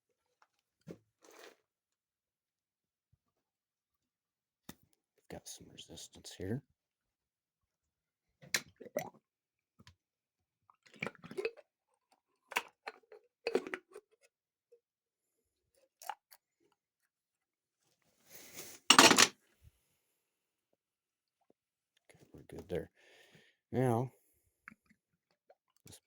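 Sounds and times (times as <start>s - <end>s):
metal tools clinking: 18.9s - 19.3s.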